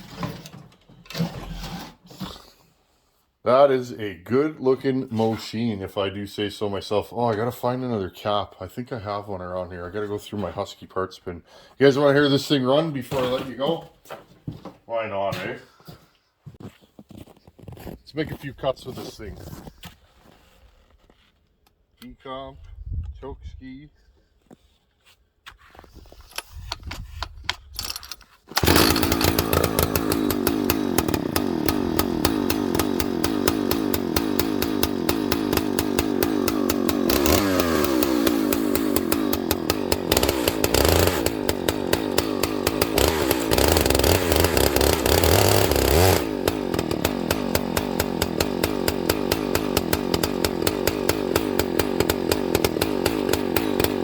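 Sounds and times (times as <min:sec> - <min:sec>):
chainsaw starter pulls: 0:00.0 - 0:02.2, 0:26.2 - 0:54.0
chainsaw engine running: 0:28.5 - 0:54.0.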